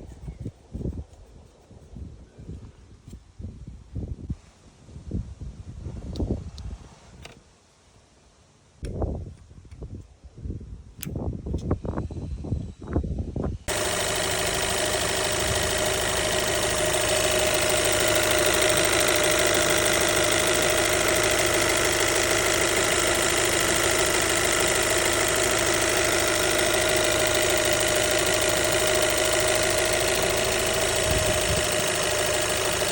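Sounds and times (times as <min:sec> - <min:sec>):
car engine idling: 0:13.7 - 0:32.9
fuel pump ticking: 0:13.7 - 0:32.9.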